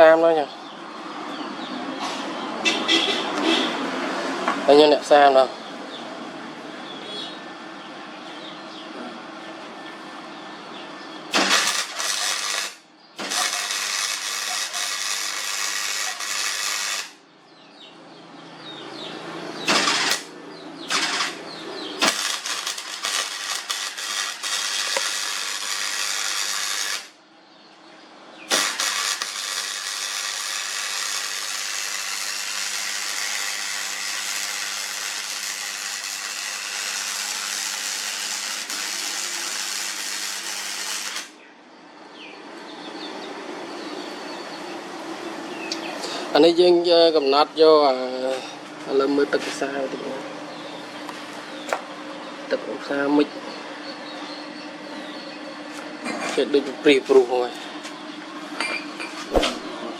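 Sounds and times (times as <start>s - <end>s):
welding arc crackling: 11.3s - 17.2s, 19.7s - 20.3s, 20.9s - 27.2s, 28.5s - 41.4s.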